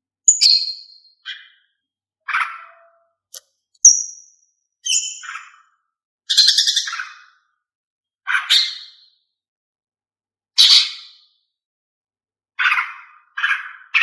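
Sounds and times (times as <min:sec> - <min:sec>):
bird chirps and whistled calls: 0:00.3 - 0:01.6, 0:03.8 - 0:05.6, 0:06.3 - 0:07.2.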